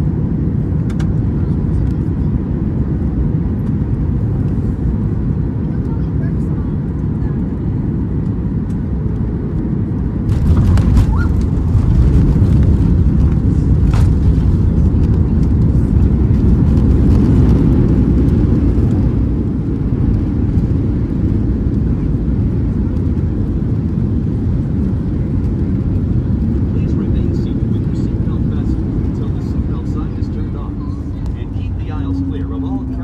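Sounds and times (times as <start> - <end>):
jet engines and wheels rumbling: 0.0 - 33.0.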